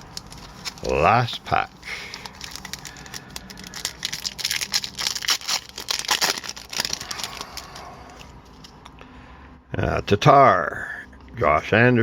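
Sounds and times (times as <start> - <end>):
wrapper tearing and crinkling: 0.0 - 1.3, 1.9 - 8.8.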